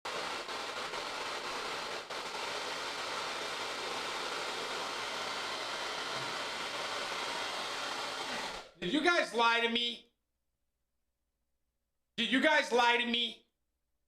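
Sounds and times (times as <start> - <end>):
hair dryer blowing: 0.0 - 8.8.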